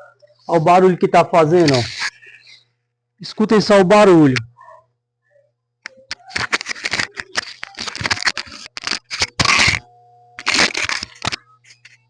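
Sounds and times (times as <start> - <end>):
electrical crackling and snapping: 5.8 - 11.6.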